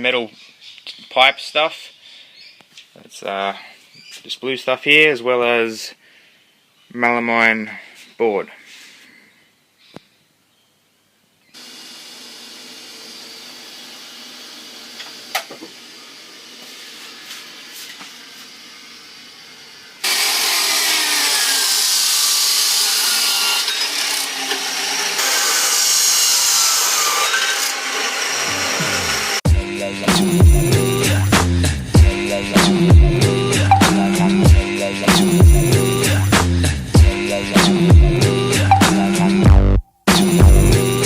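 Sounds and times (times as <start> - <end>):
loud sawing: 11.6 - 34.5.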